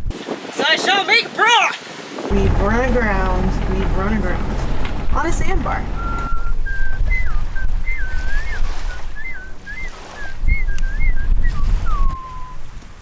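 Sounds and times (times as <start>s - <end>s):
steady low rumble: 2.3s - 8.0s.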